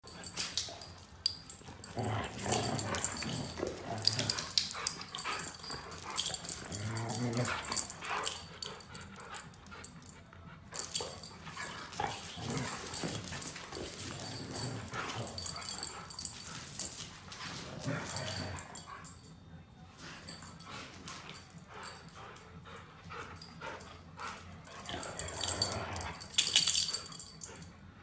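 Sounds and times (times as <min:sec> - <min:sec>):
dogs scuffling: 0:00.0 - 0:10.1, 0:10.8 - 0:19.1
dogs growling: 0:00.2 - 0:09.8, 0:10.8 - 0:19.1, 0:20.2 - 0:27.6.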